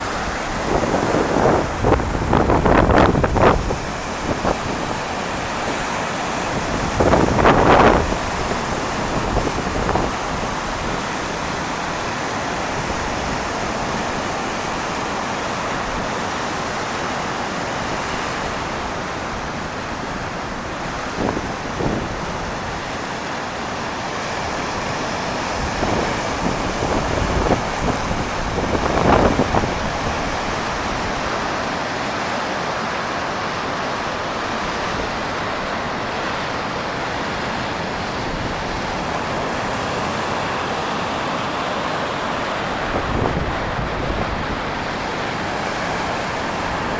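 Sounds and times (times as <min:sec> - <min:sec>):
wind buffeting the microphone: 0:00.0 - 0:16.2, 0:17.8 - 0:23.2, 0:24.0 - 0:32.0, 0:33.6 - 0:46.9
surf breaking: 0:00.0 - 0:16.9.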